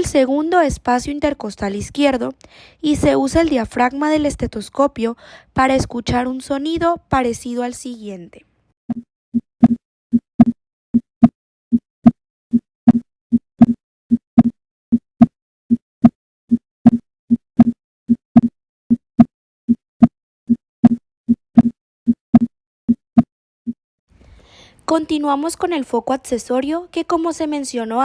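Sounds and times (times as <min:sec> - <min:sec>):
heartbeat lub-dub thuds: 0:00.0 - 0:02.2, 0:02.9 - 0:04.7, 0:05.5 - 0:07.5, 0:08.9 - 0:10.6, 0:11.7 - 0:13.8, 0:17.6 - 0:22.5.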